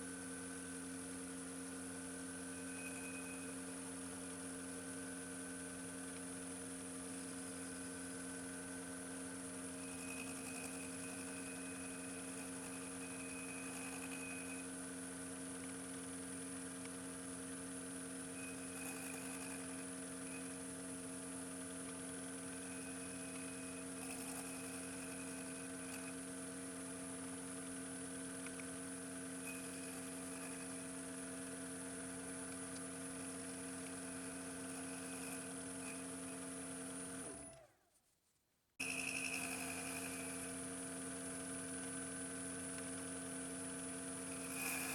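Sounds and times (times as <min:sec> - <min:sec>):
faint high whine: 0:01.6 - 0:04.8, 0:29.4 - 0:32.3.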